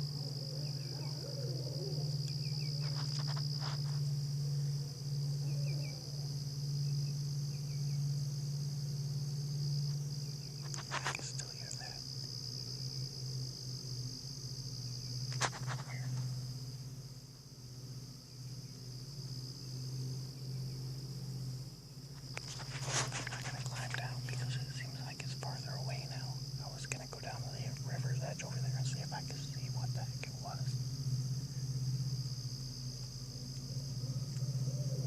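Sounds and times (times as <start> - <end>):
low buzzing hum: 0.0 - 35.0.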